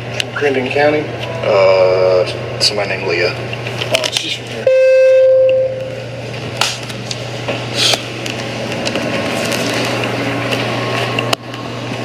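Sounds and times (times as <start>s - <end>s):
steady low hum: 0.0s - 12.0s
rustling and scraping handling noise: 9.0s - 11.2s.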